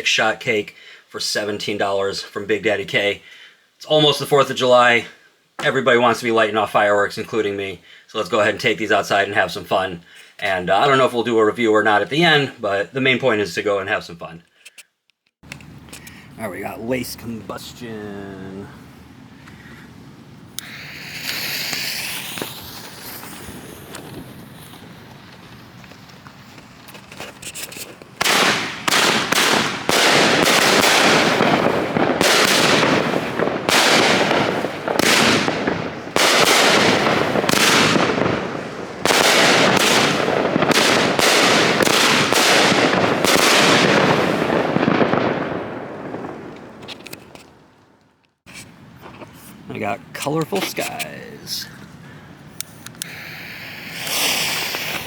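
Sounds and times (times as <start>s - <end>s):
firework cake shots: 20.5s - 47.3s, 50.2s - 51.7s, 52.6s - 55.0s.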